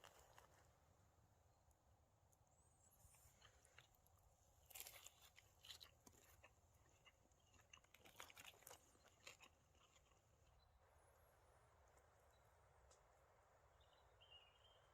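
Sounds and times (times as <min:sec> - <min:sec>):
faint crunching: 0:00.0 - 0:01.0, 0:02.8 - 0:10.6.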